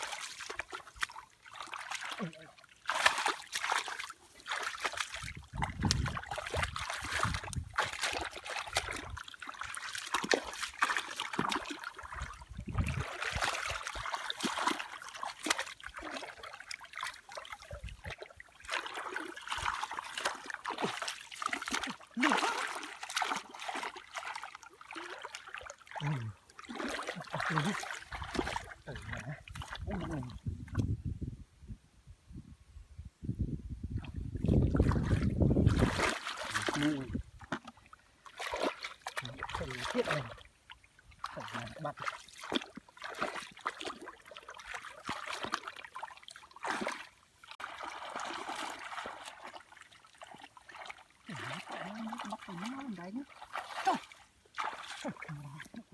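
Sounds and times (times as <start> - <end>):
water splashing: 0.0 - 30.8, 34.0 - 55.9.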